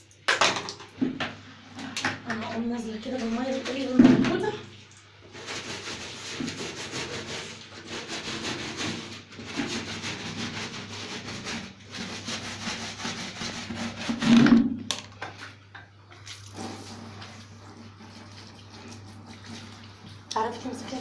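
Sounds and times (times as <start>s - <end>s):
scrubbing of wet plastic part: 15.3s - 21.0s.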